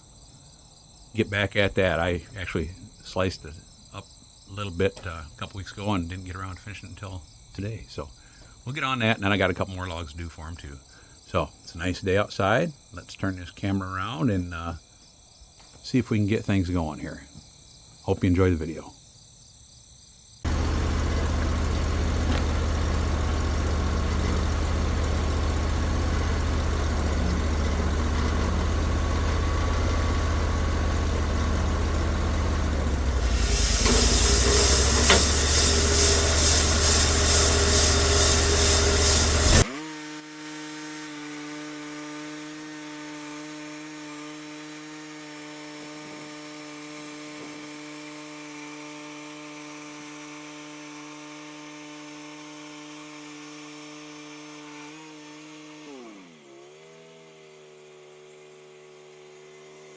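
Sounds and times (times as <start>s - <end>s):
loud hiss: 20.5s - 39.7s
sawmill engine deep hum: 20.5s - 41.0s.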